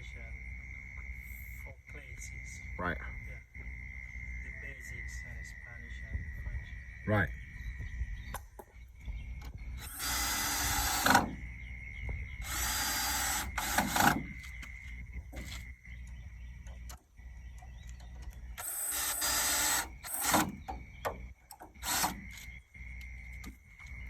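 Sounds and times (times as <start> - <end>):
power drill driving screws: 9.8 - 11.4, 12.4 - 14.7, 18.6 - 20.8, 21.5 - 22.6.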